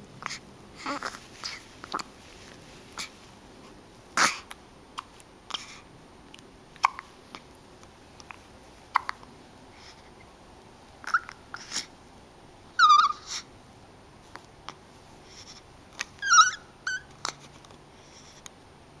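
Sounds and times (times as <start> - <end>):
person hiccuping: 6.8 - 7.1, 8.9 - 9.2.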